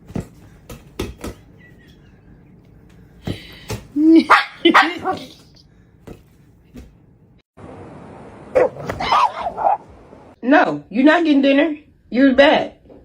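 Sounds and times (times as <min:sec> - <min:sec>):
dog barking and yelping: 0:04.2 - 0:05.4, 0:08.5 - 0:10.1.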